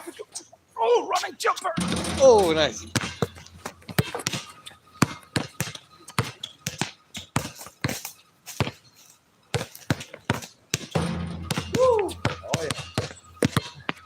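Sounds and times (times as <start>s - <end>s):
basketball bouncing on court: 1.8s - 8.0s, 9.5s - 14.0s.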